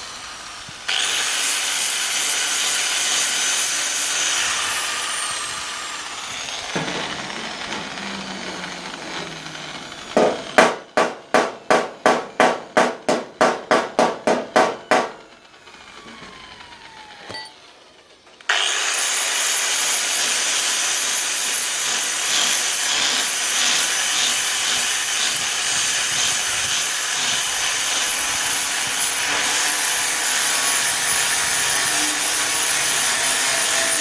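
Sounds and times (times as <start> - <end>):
angle grinder spinning down: 3.8 - 10.6, 18.5 - 26.3, 27.3 - 34.0.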